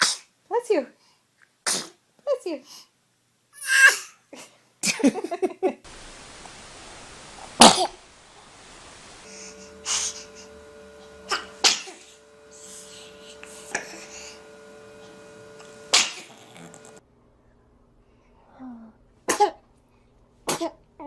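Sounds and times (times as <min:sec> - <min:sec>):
baby sneezing: 0:00.0 - 0:00.3, 0:01.6 - 0:02.0, 0:03.6 - 0:04.2, 0:07.6 - 0:08.0, 0:19.3 - 0:19.6, 0:20.5 - 0:20.8.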